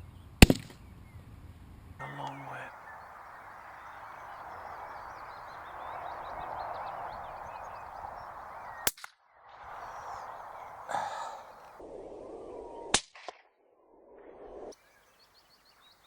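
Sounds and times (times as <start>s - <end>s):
steady outdoor hiss: 0.0s - 13.0s, 13.8s - 16.0s
faint bird chirps: 2.0s - 11.8s, 14.8s - 16.0s.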